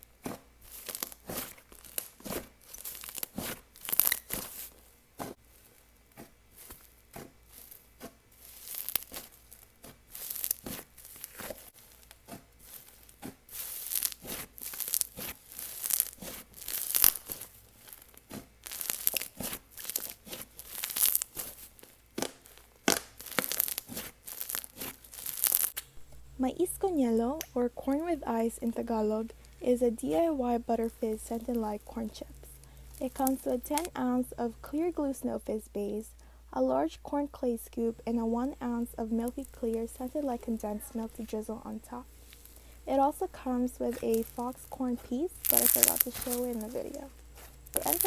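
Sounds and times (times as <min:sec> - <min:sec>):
sticky crackles and popping: 0:00.0 - 0:35.1, 0:37.7 - 0:48.0
slime squished by hand: 0:00.2 - 0:05.4, 0:06.0 - 0:26.0, 0:42.0 - 0:48.0.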